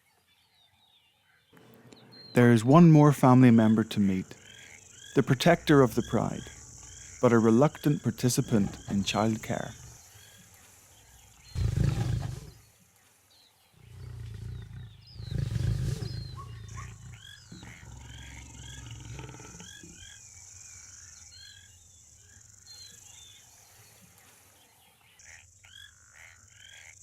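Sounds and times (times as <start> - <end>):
birds chirping: 0.0 - 27.0
lion roaring: 11.4 - 12.6, 13.8 - 20.0.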